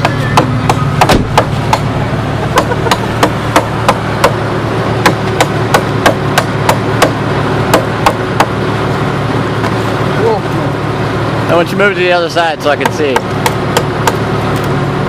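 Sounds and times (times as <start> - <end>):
axe chopping wood: 0.0 - 1.9, 2.5 - 4.4, 5.0 - 8.6, 12.8 - 14.2
steady low hum: 0.0 - 15.0.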